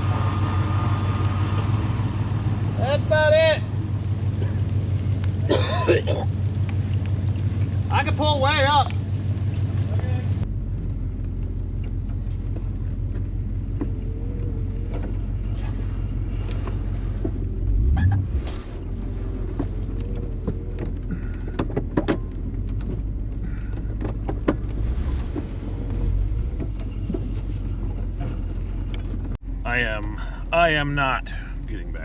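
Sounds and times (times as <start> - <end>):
truck engine from inside cab: 0.0 - 32.0
sharp clicks and knocks: 19.5 - 29.4.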